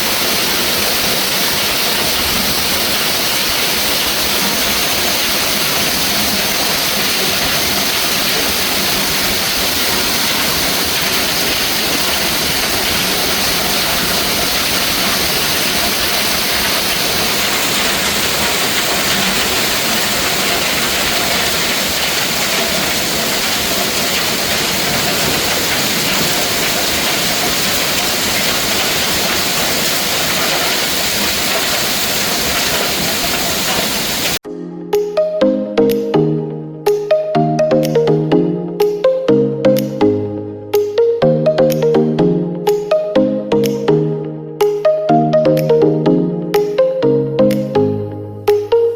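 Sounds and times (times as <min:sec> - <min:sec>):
hail and heavy rain pelting: 0:00.0 - 0:34.4.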